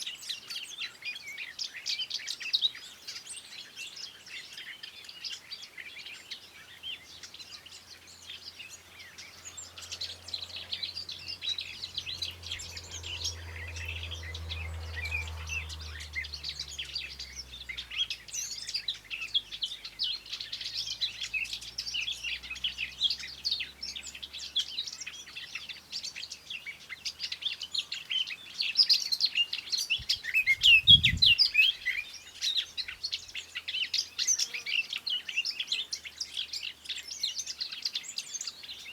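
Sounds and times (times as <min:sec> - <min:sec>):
songbirds chirping and singing: 0:00.0 - 0:38.9.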